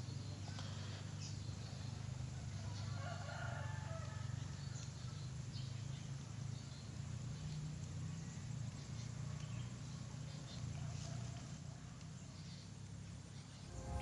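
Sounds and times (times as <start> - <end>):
rooster crowing: 2.6 - 4.6
steady low hum: 13.4 - 14.0.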